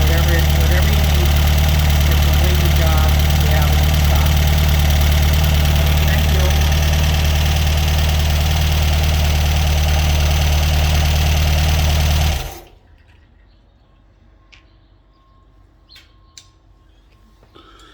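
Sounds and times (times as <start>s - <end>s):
car engine running: 0.0s - 12.8s.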